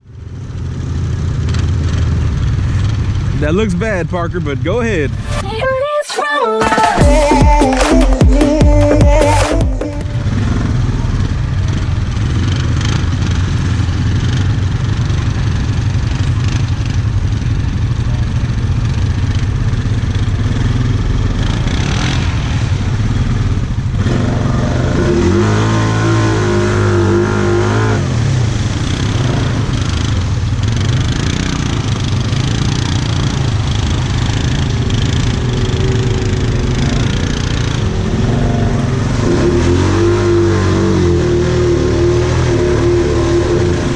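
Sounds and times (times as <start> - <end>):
atv engine running: 10.1 - 43.9.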